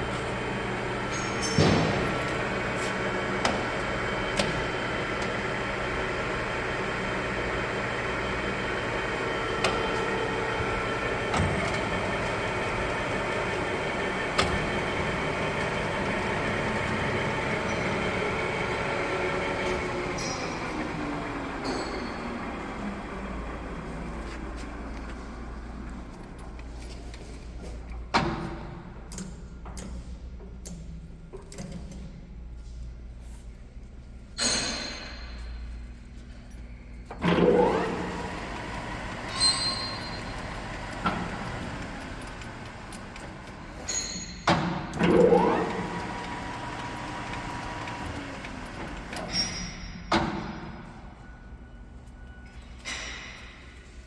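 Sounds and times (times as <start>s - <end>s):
lathe running: 0.0s - 26.4s, 37.2s - 49.4s.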